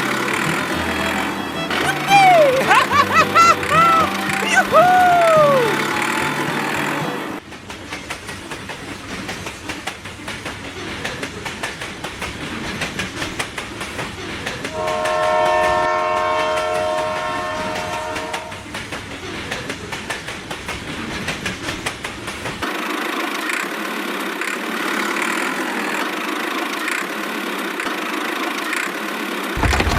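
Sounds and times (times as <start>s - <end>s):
train wheels clacking on track: 5.0s - 29.5s
train horn: 14.7s - 18.7s.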